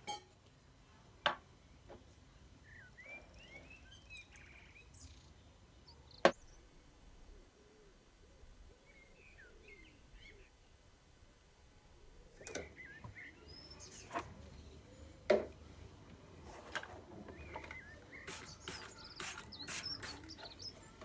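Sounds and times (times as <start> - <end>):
small birds chirping: 2.6 - 6.6, 12.4 - 21.0.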